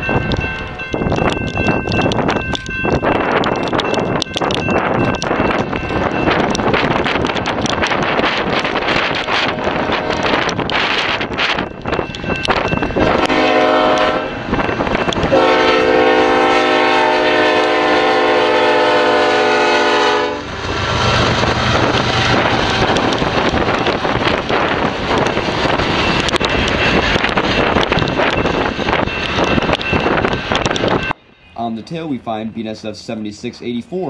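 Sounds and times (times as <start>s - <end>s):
freight train rumbling and clattering: 0.0s - 34.0s
locomotive air horn: 9.4s - 10.5s, 13.1s - 14.4s, 15.3s - 20.5s.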